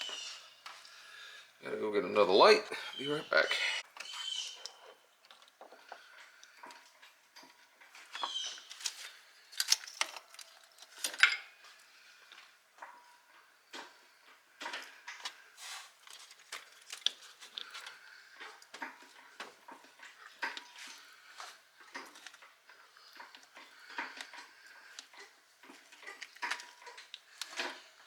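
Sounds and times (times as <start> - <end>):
small hard objects clinking: 8.3 - 11.5.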